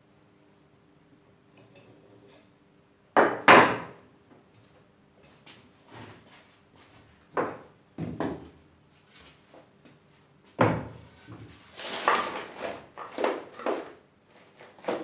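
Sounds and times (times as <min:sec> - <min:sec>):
objects knocking and clattering: 0:07.3 - 0:08.6, 0:10.6 - 0:15.0.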